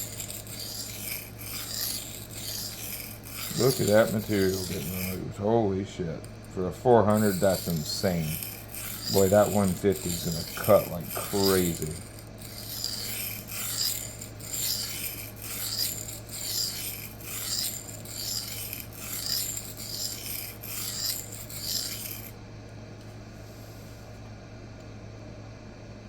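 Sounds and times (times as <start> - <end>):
knife rasping on sharpening plate: 0.0 - 5.2, 7.1 - 22.3.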